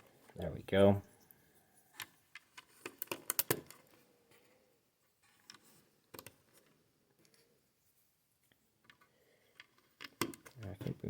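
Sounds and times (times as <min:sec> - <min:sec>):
plastic bricks clicking and clattering: 0:02.0 - 0:03.9, 0:08.8 - 0:11.0.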